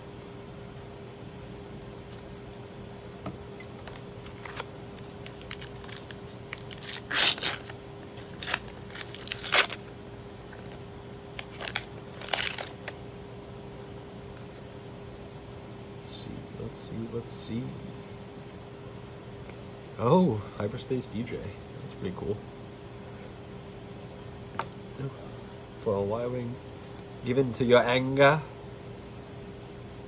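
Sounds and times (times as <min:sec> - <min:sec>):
wrapper crinkling and tearing: 0:03.9 - 0:09.9, 0:10.5 - 0:10.8, 0:11.4 - 0:13.0.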